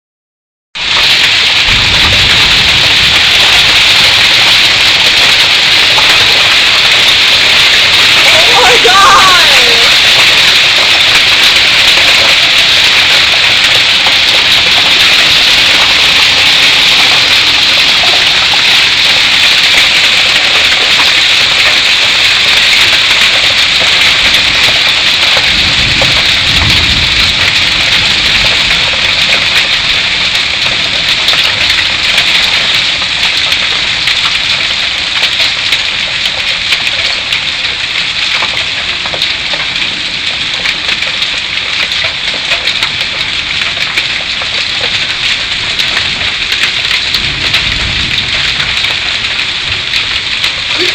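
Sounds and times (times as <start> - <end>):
heavy hail clattering: 0.8 - 50.9
rain: 0.8 - 50.9
low rumble: 1.7 - 4.1.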